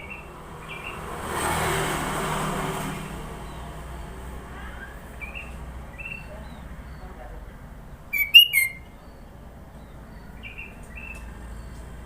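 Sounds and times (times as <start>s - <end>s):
vehicle passing by: 0.3s - 5.9s
bird chirps: 8.1s - 11.3s.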